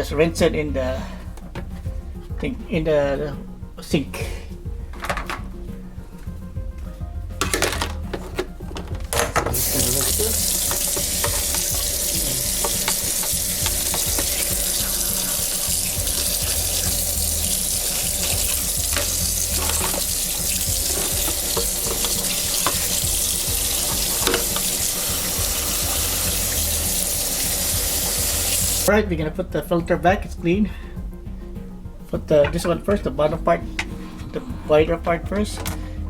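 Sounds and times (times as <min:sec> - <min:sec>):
tap running into sink: 0:07.4 - 0:28.9.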